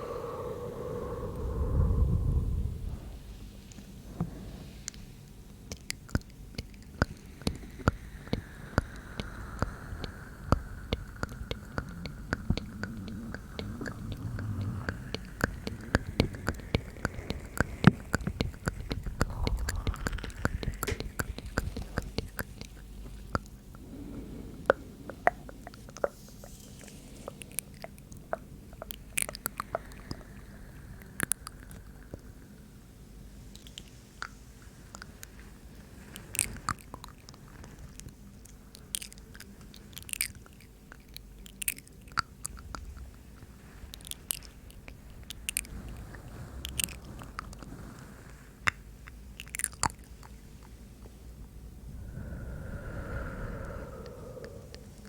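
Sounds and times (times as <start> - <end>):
soft breathing: 0.0 - 5.4, 6.6 - 39.9, 42.6 - 55.0
wet mouth clicks and smacks: 5.7 - 23.6.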